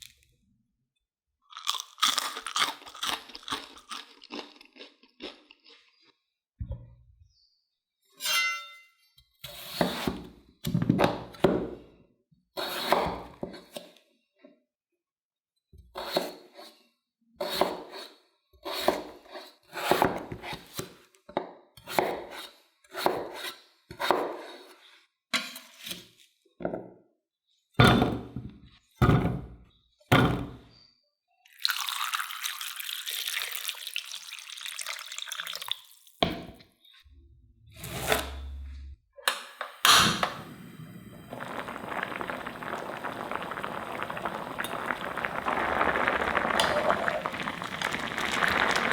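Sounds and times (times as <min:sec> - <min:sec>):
water splashes: 0:31.6 - 0:36.2, 0:41.0 - 0:48.9.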